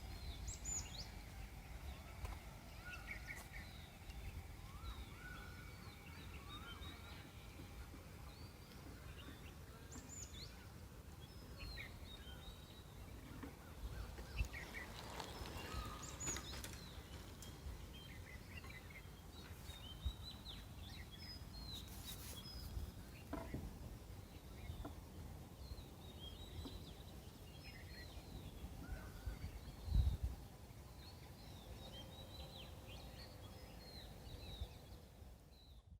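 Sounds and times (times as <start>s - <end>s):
forest birds chirping: 0.0s - 35.9s.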